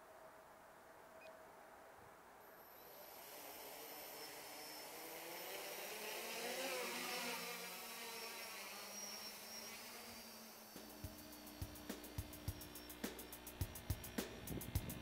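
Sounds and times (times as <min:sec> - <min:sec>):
drone motors buzzing: 0:02.6 - 0:15.0
music with drum hits: 0:11.0 - 0:15.0
wind noise: 0:14.4 - 0:15.0.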